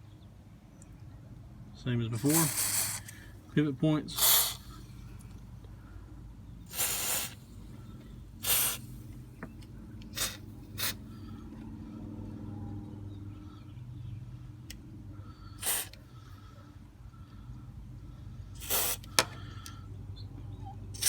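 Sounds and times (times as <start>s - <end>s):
aerosol can spraying: 2.2s - 3.2s, 4.2s - 4.7s, 6.7s - 7.4s, 8.4s - 8.9s, 10.2s - 11.0s, 15.6s - 16.0s, 18.6s - 19.2s.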